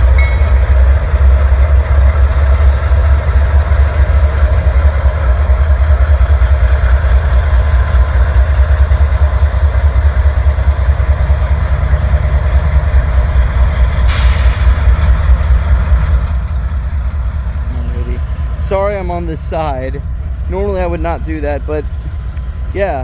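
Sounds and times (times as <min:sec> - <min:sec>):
diesel locomotives rumbling: 0:00.0 - 0:23.0
short hiss: 0:14.1 - 0:14.8.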